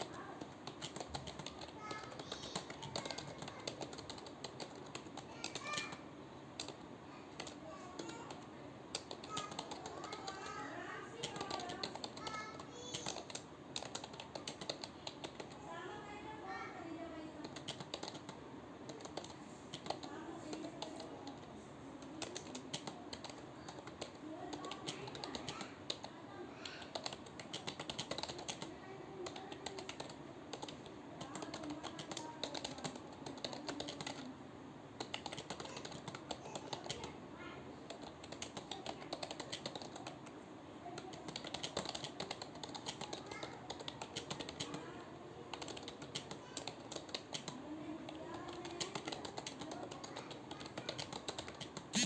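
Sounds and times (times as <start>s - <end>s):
keyboard typing: 0.0s - 15.7s, 17.4s - 34.3s, 35.0s - 37.2s, 37.8s - 52.0s.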